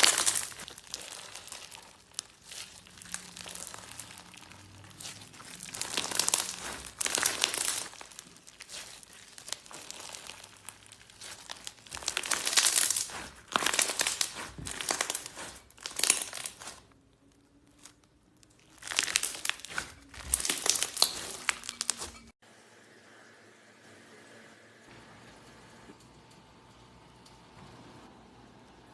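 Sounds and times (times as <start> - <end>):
slime crackling and popping: 0.0 - 22.4.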